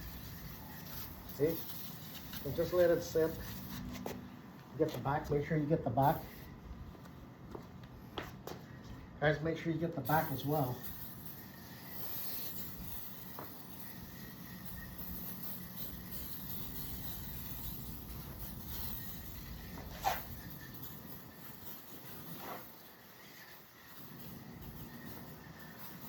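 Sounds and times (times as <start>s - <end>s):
aerosol can spraying hiss: 0.0s - 3.8s, 10.1s - 20.5s.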